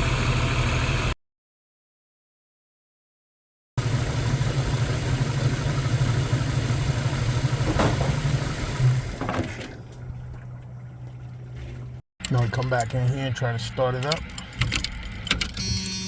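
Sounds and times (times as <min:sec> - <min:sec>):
car engine idling: 0:03.8 - 0:12.0.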